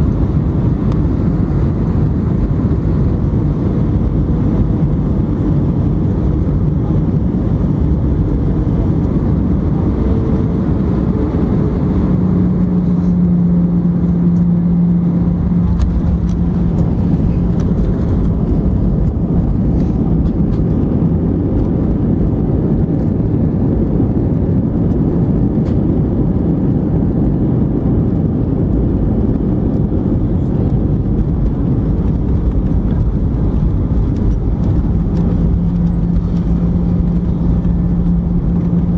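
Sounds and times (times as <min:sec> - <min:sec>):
airliner engine rumble: 0:00.0 - 0:38.9
low steady hum: 0:00.0 - 0:38.9.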